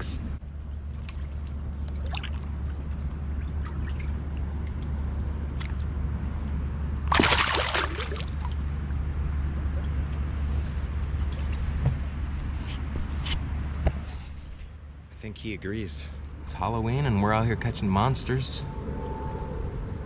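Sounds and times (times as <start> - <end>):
steady low rumble: 0.0 - 20.0
water splash: 0.9 - 5.9, 7.1 - 8.9.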